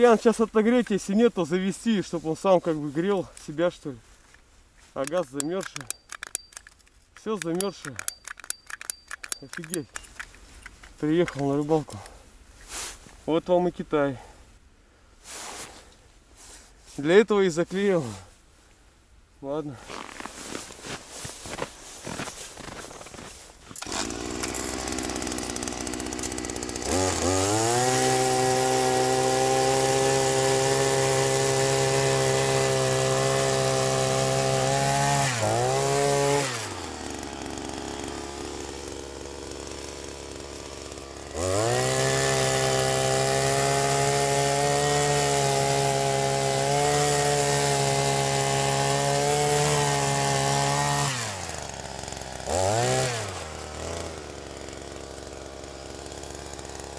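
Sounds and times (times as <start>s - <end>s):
ice auger engine revving: 23.8s - 56.9s.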